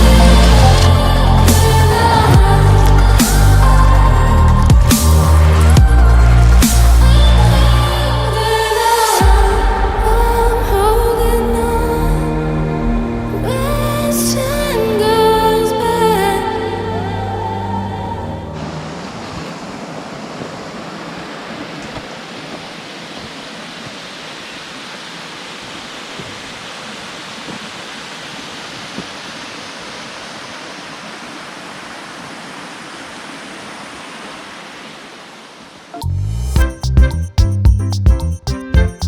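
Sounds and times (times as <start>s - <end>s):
small waterfall rushing: 0.0s - 12.4s, 18.5s - 36.0s.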